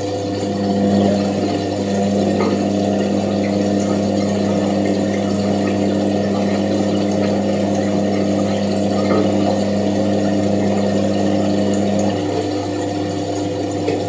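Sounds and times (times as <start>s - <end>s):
washing machine motor hum: 0.0s - 14.0s.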